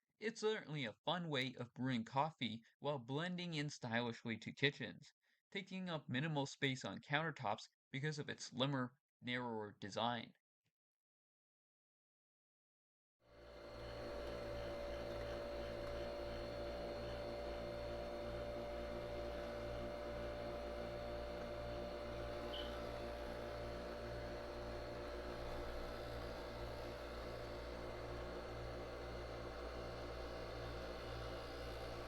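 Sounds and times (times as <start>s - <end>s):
coffee machine motor humming: 13.3s - 32.0s.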